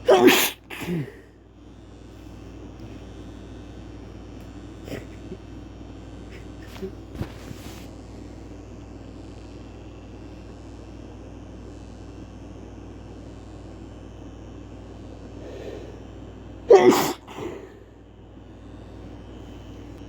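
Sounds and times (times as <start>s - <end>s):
man sneezing loudly: 0.0s - 1.3s, 16.7s - 17.8s
steady low hum: 0.0s - 20.0s
faint intake of breath: 15.3s - 16.2s.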